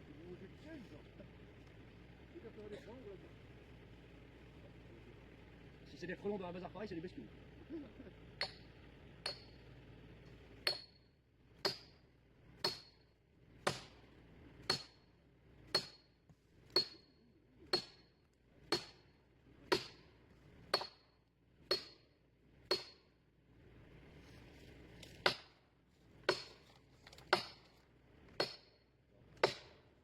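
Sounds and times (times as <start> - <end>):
hammer striking metal wedge: 8.4 - 9.6, 10.6 - 11.0, 11.6 - 12.0, 12.6 - 13.0, 13.6 - 14.0, 14.6 - 15.0, 15.7 - 16.1, 16.7 - 17.1, 17.7 - 18.1, 18.7 - 19.1, 19.7 - 20.0, 20.7 - 23.1, 25.2 - 25.5, 28.4 - 28.8, 29.4 - 29.8.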